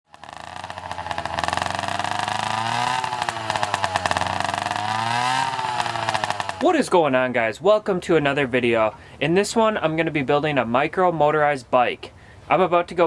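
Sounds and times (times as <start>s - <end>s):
small two-stroke engine revving: 0.0s - 6.7s.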